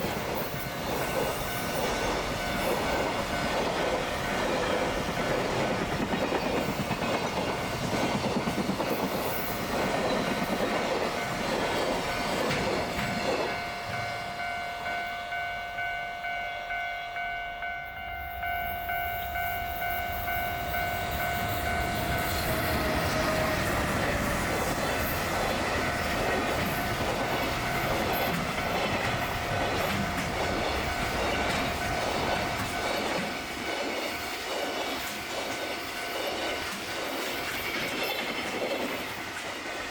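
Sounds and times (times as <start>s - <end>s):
train wheels clattering: 0.0s - 13.7s, 20.3s - 39.9s
level crossing warning bell: 0.0s - 38.8s.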